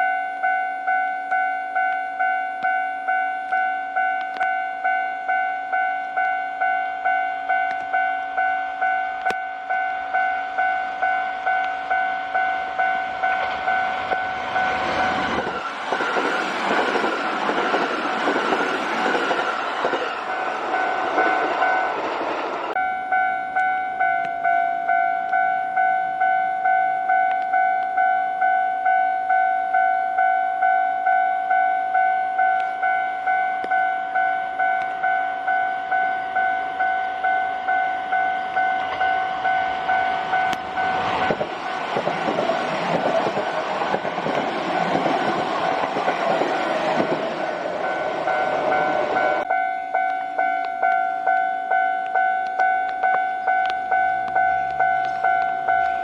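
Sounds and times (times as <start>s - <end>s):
level crossing alarm bell ringing: 0.0s - 56.0s
train wheels clattering: 13.3s - 22.8s, 38.8s - 49.5s.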